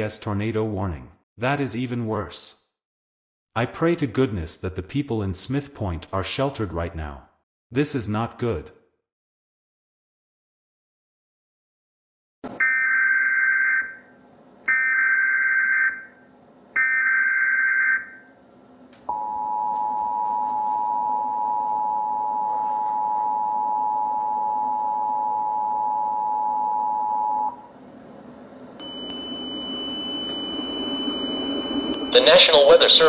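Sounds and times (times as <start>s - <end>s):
data tone bursts: 28.8s - 33.0s
two-tone attention signal: 28.8s - 33.0s.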